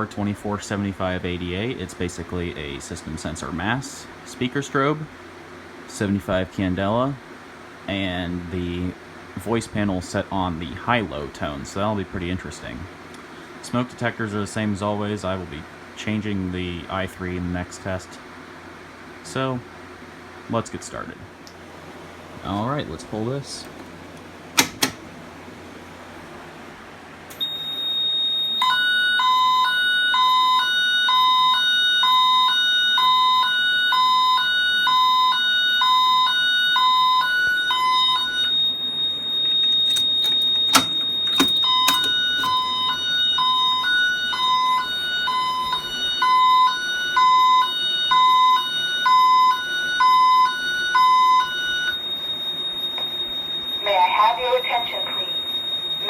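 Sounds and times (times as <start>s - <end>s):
speaker clicks: 24.6s - 25.1s, 39.7s - 42.7s
high-low alarm tone: 37.9s - 56.0s.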